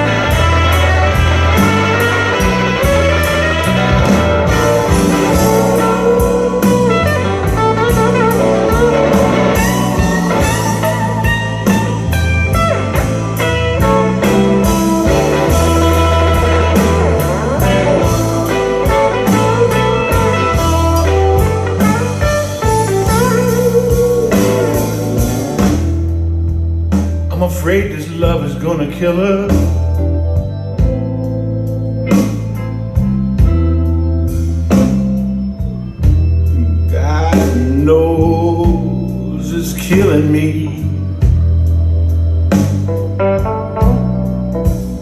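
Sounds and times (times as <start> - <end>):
blues-rock electric guitar music: 0.0 - 45.0.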